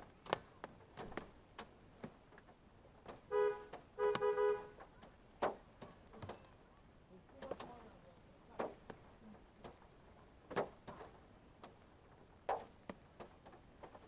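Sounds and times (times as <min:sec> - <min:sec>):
two-tone car horn honking: 0:03.3 - 0:04.8.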